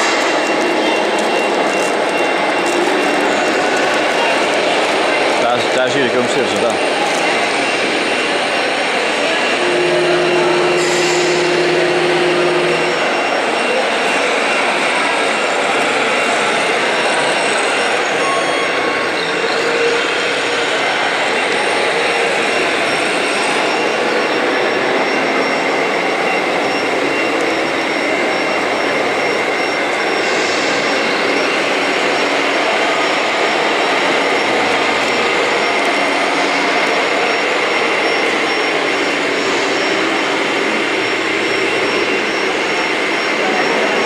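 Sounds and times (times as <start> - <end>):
high constant whine: 0.0 - 44.0.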